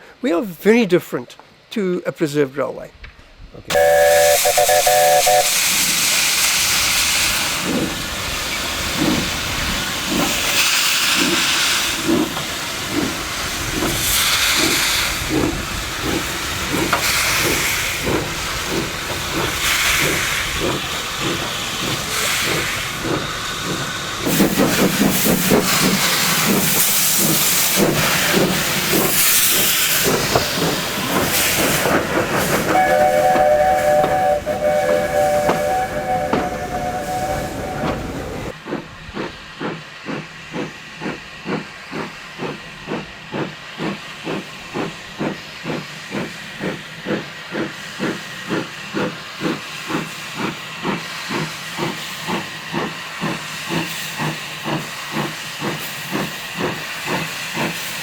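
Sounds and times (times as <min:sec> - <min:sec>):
steam whistle: 0:03.7 - 0:06.0, 0:32.7 - 0:38.2
steam hissing: 0:03.7 - 0:58.0
steam locomotive exhaust beating: 0:03.7 - 0:58.0.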